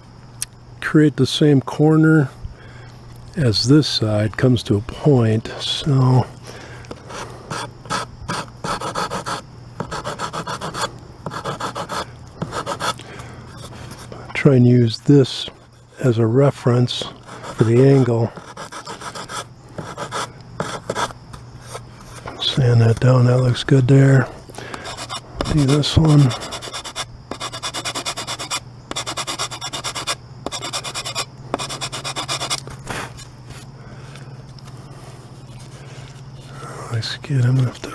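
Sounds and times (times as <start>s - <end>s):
steady low hum: 0.0s - 37.9s
sandpaper rubbing on board: 7.1s - 13.0s, 17.3s - 21.8s, 24.8s - 33.1s.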